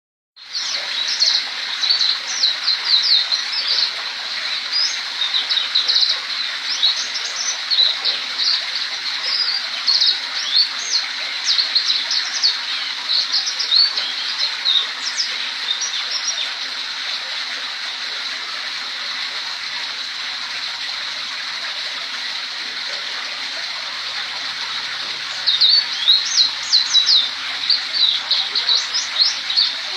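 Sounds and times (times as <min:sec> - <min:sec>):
songbird twittering and trilling: 0:00.5 - 0:03.9, 0:04.5 - 0:16.5, 0:25.2 - 0:29.9.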